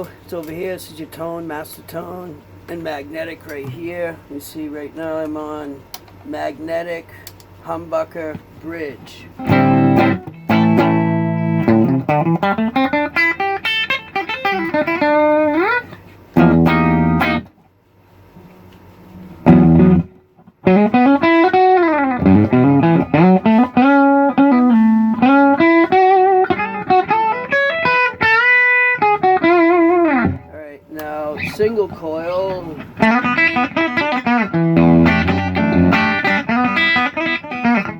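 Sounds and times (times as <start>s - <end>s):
electric guitar chord: 9.4s - 17.5s, 19.4s - 30.5s, 32.4s - 37.9s
electric guitar gliding runs: 33.0s - 37.9s.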